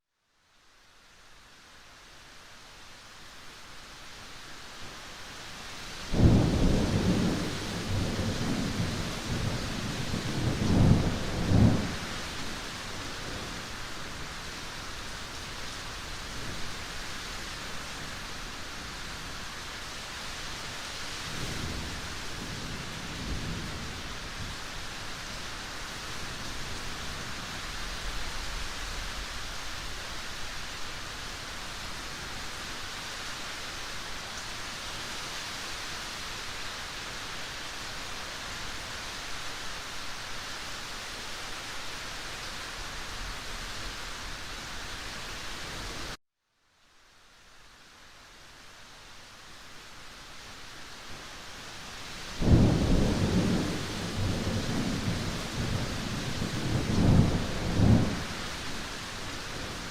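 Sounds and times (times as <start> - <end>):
heavy rain: 0.4 - 46.2, 46.9 - 59.9
thunder rumbling: 52.4 - 58.7.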